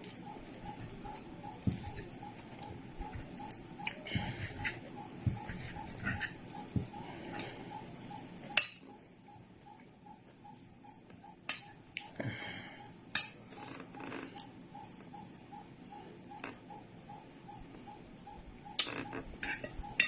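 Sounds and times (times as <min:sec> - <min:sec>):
faint steady ticking: 0:00.0 - 0:20.0
cutlery clinking on a plate: 0:19.4 - 0:19.8.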